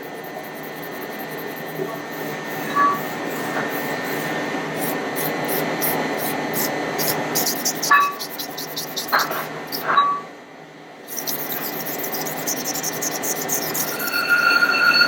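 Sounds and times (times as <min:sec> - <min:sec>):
knife grinding on whetstone: 0:00.0 - 0:10.0, 0:11.1 - 0:15.0.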